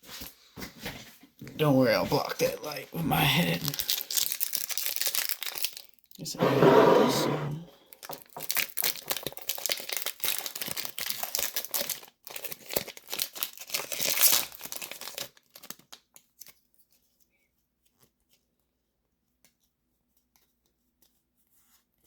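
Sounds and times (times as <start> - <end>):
foil wrapper crinkling and tearing: 2.2 - 6.3, 7.8 - 18.6.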